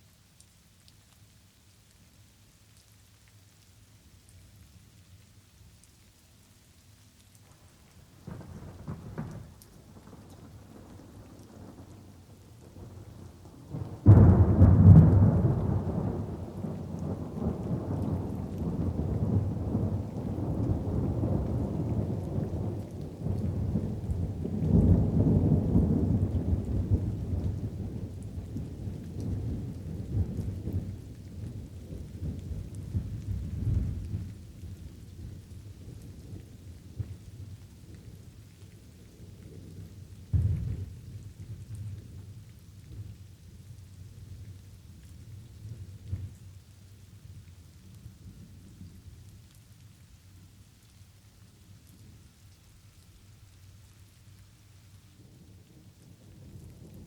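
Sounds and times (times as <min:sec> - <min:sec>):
light rain: 0:00.0 - 0:57.0
thunder rumbling: 0:12.8 - 0:28.8
loud thunderclap: 0:14.0 - 0:16.4.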